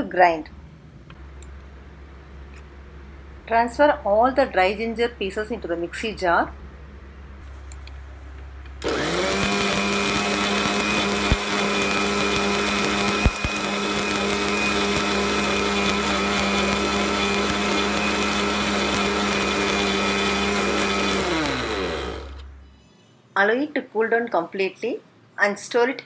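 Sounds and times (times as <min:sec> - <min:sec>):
mixer grinder grinding ginger: 0:08.8 - 0:22.6.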